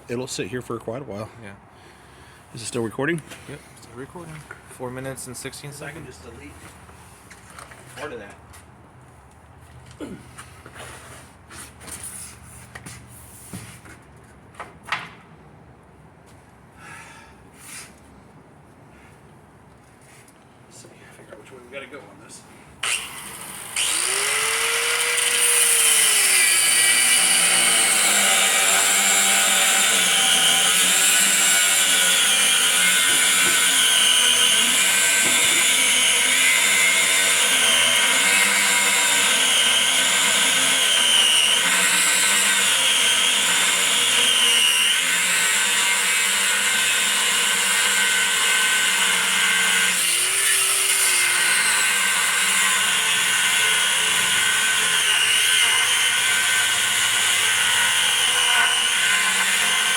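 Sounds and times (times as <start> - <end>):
angle grinder cutting steel: 22.8 - 59.9.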